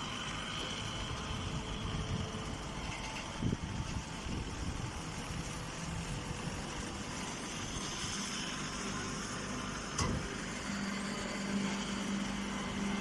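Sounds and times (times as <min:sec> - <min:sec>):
engine-driven machine running: 0:00.0 - 0:13.0
sharp click: 0:10.0 - 0:10.3.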